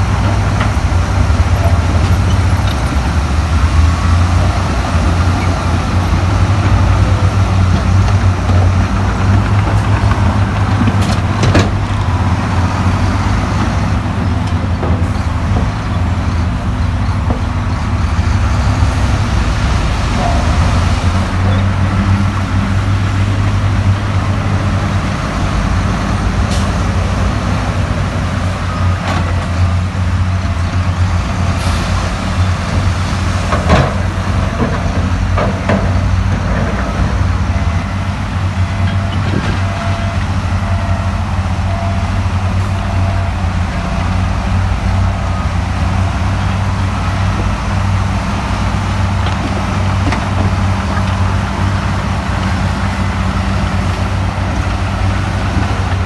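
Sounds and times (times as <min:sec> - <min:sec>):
heavy diesel engine running: 0:00.0 - 0:56.0
sharp knocks and clanks: 0:07.7 - 0:12.0.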